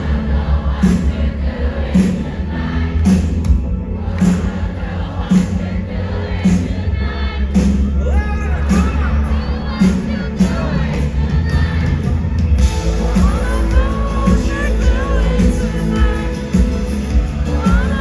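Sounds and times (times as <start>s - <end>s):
drum beat: 12.6s - 18.0s
person singing: 12.6s - 18.0s.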